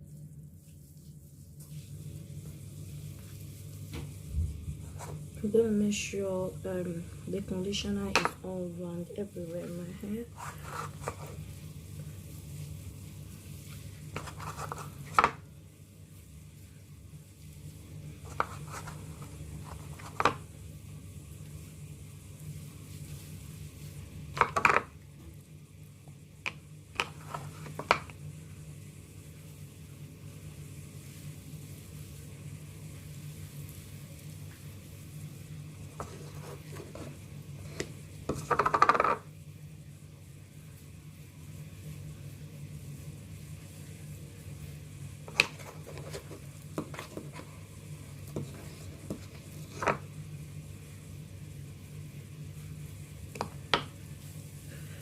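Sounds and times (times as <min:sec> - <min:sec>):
soft squelches of wet hair: 0:00.0 - 0:06.3
steady low hum: 0:00.0 - 0:55.0.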